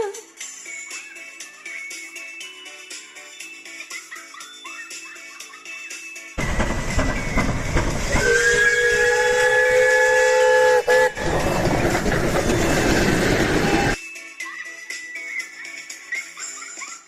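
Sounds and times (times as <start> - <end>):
steam locomotive chuffing: 6.4 - 14.0
steam whistle blast: 8.1 - 11.5.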